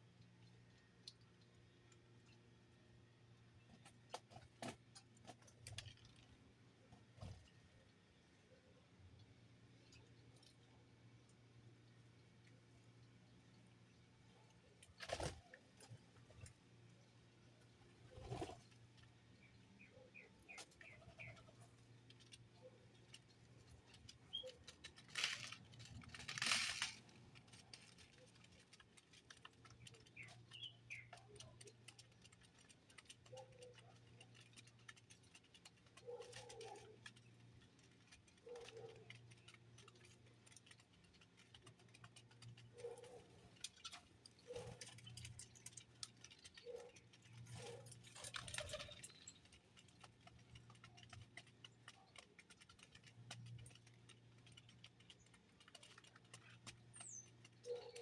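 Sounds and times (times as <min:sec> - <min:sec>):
birds pecking clicks: 0:18.1 - 0:58.0
bird calls: 0:56.9 - 0:58.0.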